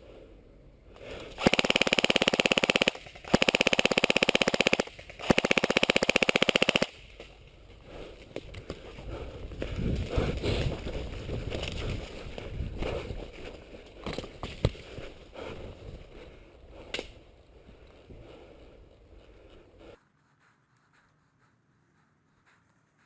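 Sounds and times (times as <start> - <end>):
twigs snapping: 16.9 - 17.2.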